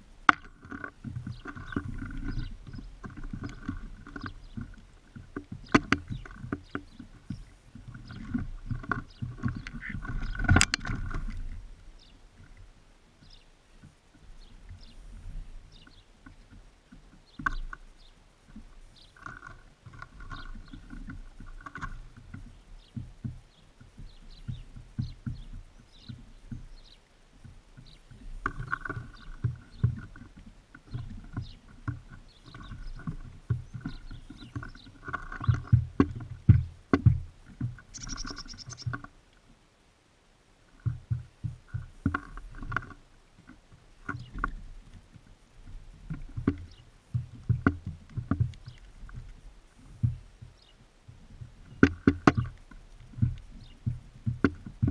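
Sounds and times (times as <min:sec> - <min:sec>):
birds pecking on a feeder: 0:00.2 - 0:12.6, 0:13.2 - 0:39.4, 0:40.8 - 0:54.9
high bird calls: 0:09.0 - 0:10.7, 0:37.9 - 0:39.0.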